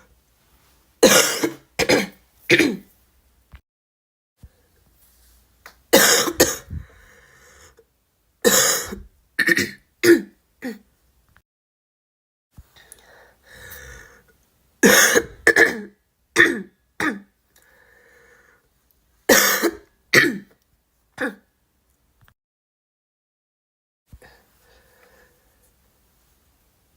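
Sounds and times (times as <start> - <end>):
girl coughing: 1.0 - 2.8, 6.0 - 6.9, 8.5 - 10.8, 14.8 - 17.3, 19.3 - 20.5.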